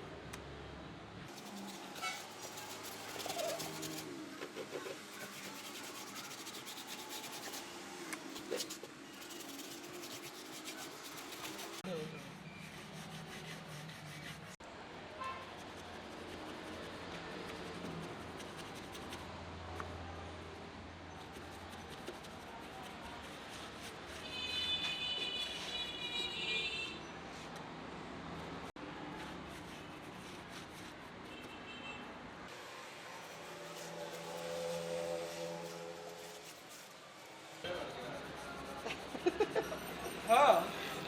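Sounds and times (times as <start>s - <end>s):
rubbing and scraping: 1.3s - 14.6s, 15.5s - 19.3s, 21.2s - 25.9s, 29.1s - 31.6s, 32.6s - 41.0s.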